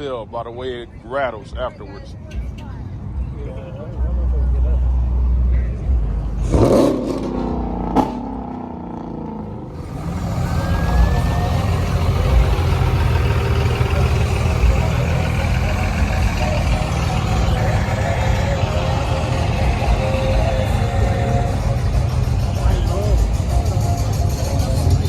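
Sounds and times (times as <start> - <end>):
car engine revving down: 5.1 - 25.0.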